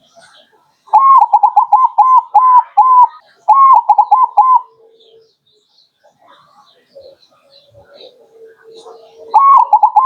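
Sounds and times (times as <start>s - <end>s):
dove cooing: 0.9s - 5.2s, 6.9s - 10.0s.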